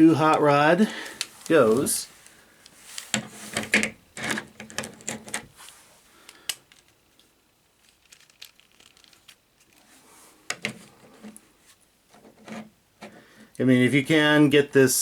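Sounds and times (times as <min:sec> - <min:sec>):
plastic figure clicking and rattling: 0:03.0 - 0:05.5, 0:06.5 - 0:09.8.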